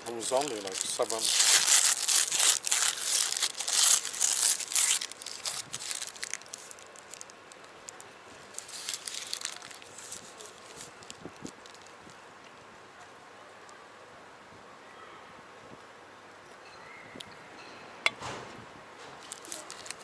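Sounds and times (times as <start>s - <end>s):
wrapper crinkling and rustling: 0.0s - 12.2s, 19.0s - 20.0s.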